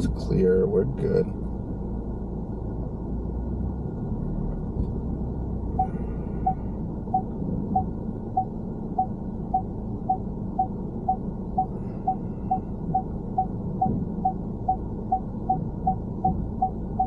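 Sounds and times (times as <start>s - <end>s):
low road rumble: 0.0s - 17.0s
turn signal ticking: 5.8s - 17.0s.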